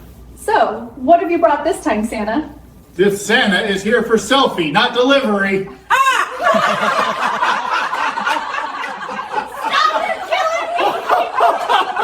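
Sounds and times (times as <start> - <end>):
people laughing: 5.7 - 12.0.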